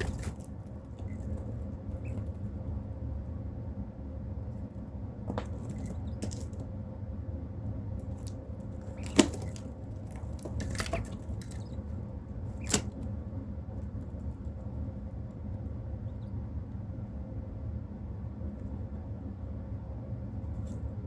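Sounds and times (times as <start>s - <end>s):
steady low hum: 0.0s - 21.0s.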